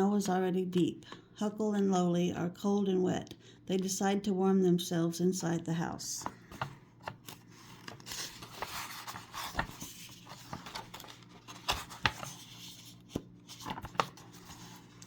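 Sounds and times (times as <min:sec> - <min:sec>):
paper page rustling: 0:06.5 - 0:15.0.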